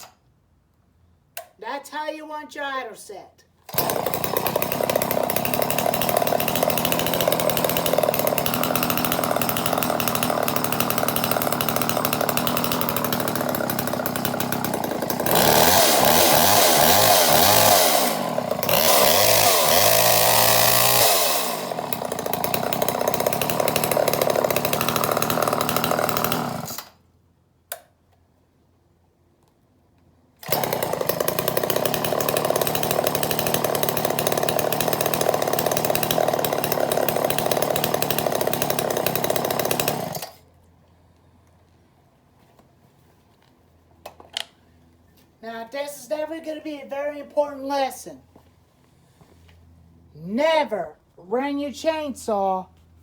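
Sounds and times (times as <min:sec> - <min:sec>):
chainsaw idling and revving: 0:03.7 - 0:27.0, 0:30.4 - 0:40.4.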